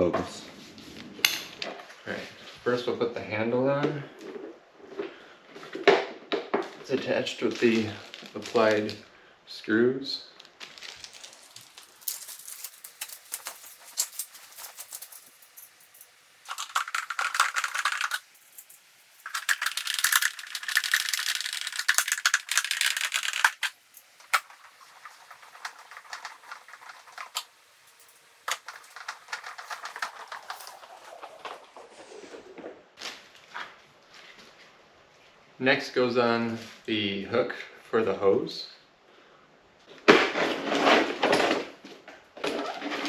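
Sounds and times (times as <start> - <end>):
screwdriver rapid clicking: 16.5 - 27.5.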